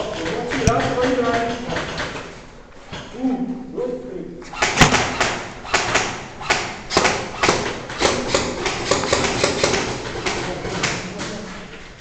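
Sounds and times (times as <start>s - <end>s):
airsoft guns firing: 4.5s - 11.3s.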